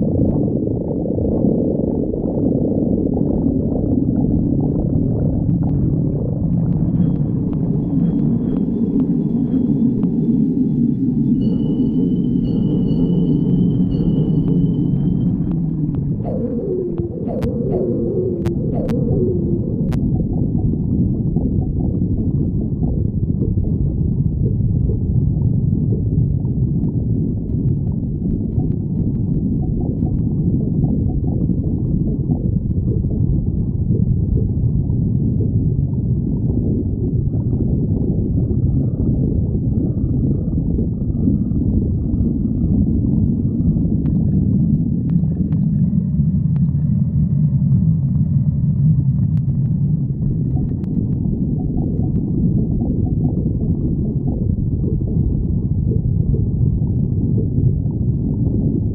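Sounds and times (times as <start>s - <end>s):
stomach growling: 0.0s - 10.6s, 13.9s - 58.9s
faint gurgling: 15.4s - 26.7s.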